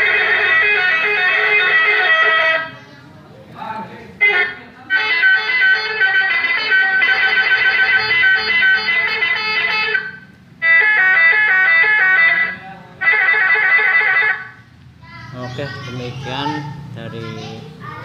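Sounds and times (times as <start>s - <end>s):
electronic horn melody through loudspeaker: 0.0s - 2.8s, 4.2s - 14.6s.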